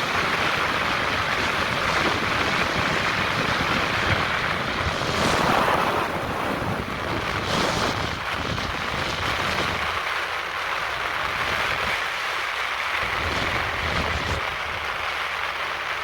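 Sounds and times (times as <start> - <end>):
strong wind buffeting microphone: 0.0 - 10.2, 10.9 - 15.1.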